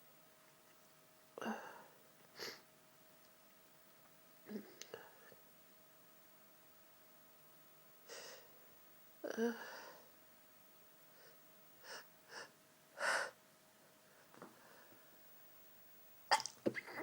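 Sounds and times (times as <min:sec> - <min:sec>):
person sneezing: 0:16.3 - 0:17.0.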